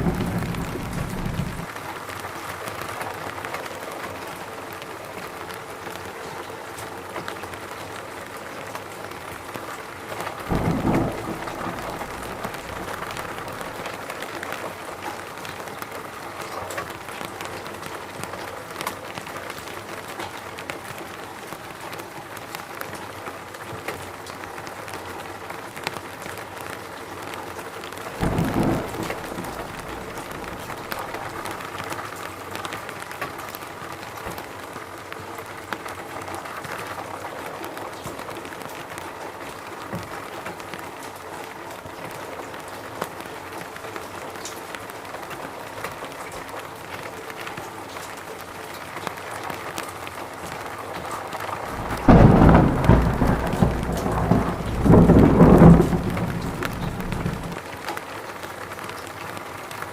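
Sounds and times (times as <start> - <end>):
short low thump: 0.0 - 1.6, 51.8 - 57.6
rain falling in forest: 0.0 - 59.9.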